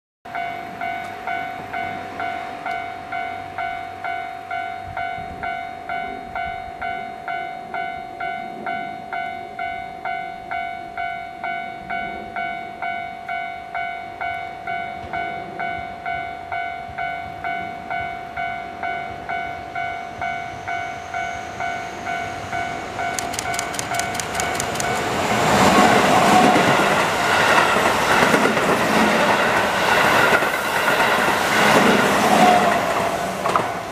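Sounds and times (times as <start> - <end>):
electric train passing: 0.3 - 33.9
wheel and rail noise: 19.5 - 33.9.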